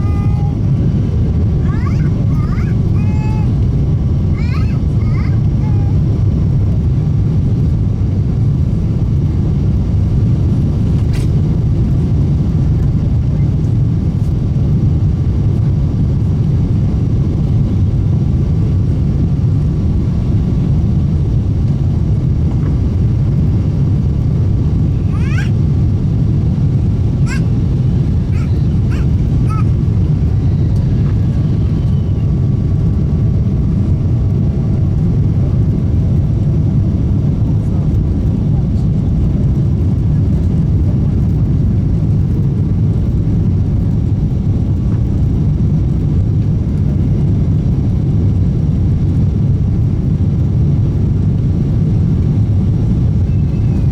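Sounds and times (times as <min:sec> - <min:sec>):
airliner cabin engine roar: 0:00.0 - 0:53.9
airflow past fuselage: 0:19.0 - 0:34.6.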